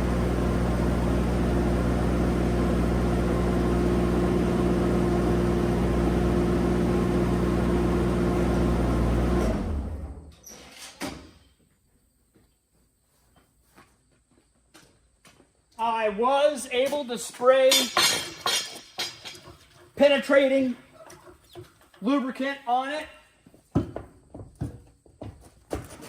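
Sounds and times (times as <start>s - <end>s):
engine idling and winding down: 0.0s - 10.3s.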